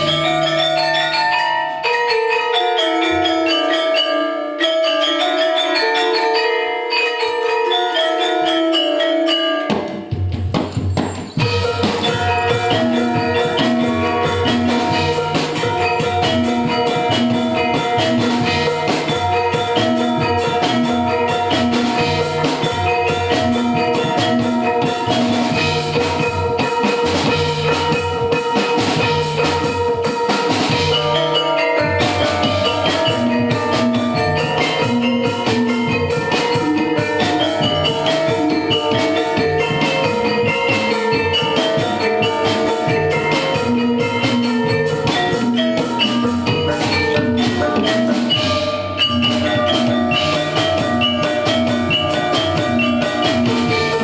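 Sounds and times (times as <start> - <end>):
mallet percussion ringing: 0.0 - 54.0
steady drum rhythm: 0.0 - 54.0.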